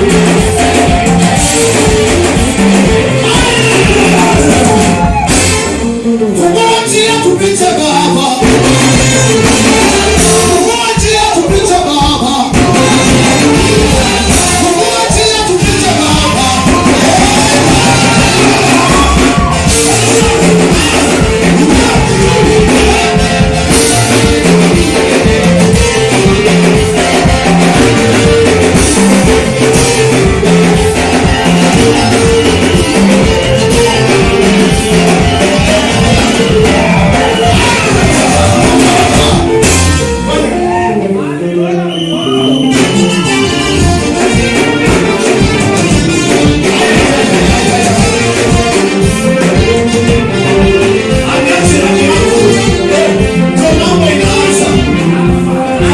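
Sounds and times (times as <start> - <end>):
bass and drums beat: 0.0 - 6.7, 7.4 - 40.8, 42.6 - 55.9
worship singing over guitar: 0.0 - 55.9.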